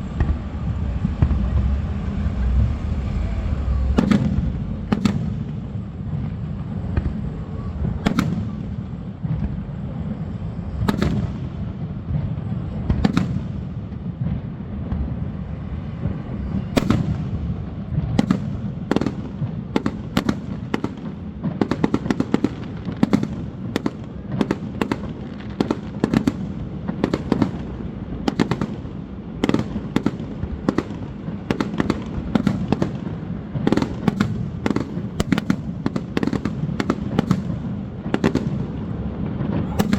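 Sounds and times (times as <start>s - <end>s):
low rumble: 0.0s - 9.7s, 13.9s - 18.8s
fireworks bursting: 0.0s - 39.9s.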